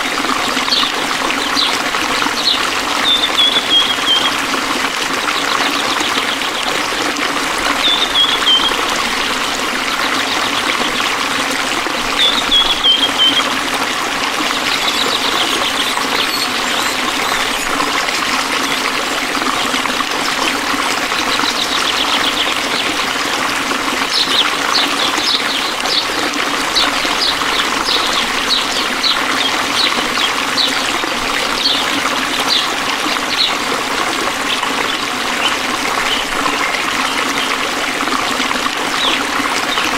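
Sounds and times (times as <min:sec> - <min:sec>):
stream trickling: 0:00.0 - 0:39.9
short high chirps: 0:14.8 - 0:18.3.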